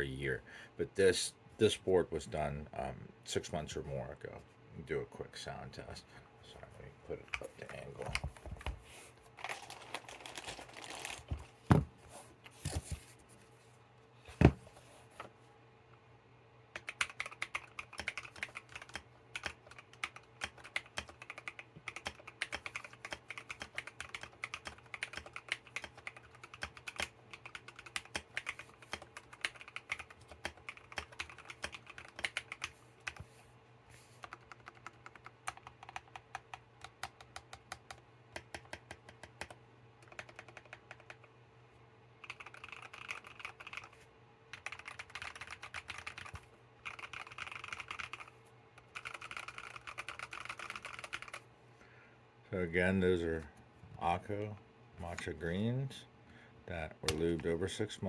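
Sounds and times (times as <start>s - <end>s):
mechanical keyboard typing: 16.8s - 33.2s, 34.2s - 41.3s, 42.2s - 51.4s.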